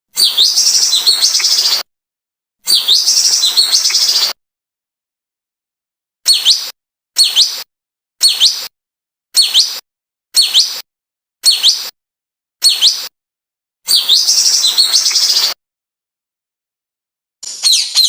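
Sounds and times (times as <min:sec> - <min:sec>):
rapid high bird chirps: 0:00.1 - 0:01.9, 0:02.7 - 0:04.4, 0:06.2 - 0:09.8, 0:10.4 - 0:12.0, 0:12.6 - 0:13.2, 0:13.9 - 0:15.6, 0:17.4 - 0:18.0
songbird chirped phrase: 0:00.2 - 0:01.9, 0:02.7 - 0:04.4, 0:13.9 - 0:15.6, 0:17.4 - 0:18.0.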